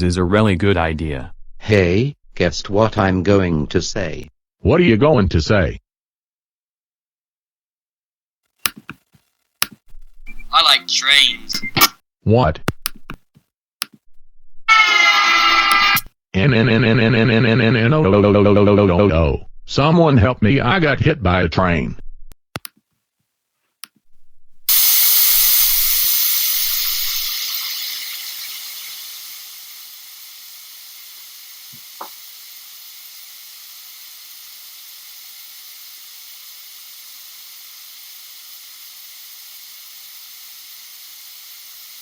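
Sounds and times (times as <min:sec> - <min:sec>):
loud burst of hissing: 0:24.7 - 0:42.0.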